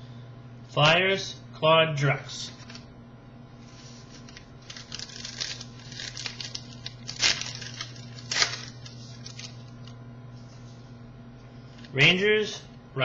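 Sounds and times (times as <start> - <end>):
steady low hum: 0.0 - 13.0
cards rustling and sliding: 2.5 - 2.9, 3.6 - 9.9.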